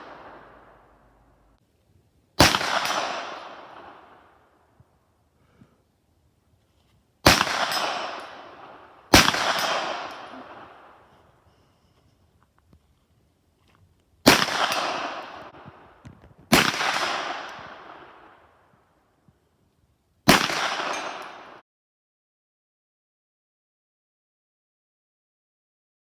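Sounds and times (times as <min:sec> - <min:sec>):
echoing gunshots: 0:00.0 - 0:01.4, 0:02.4 - 0:04.5, 0:07.2 - 0:11.1, 0:14.2 - 0:18.6, 0:20.3 - 0:21.6.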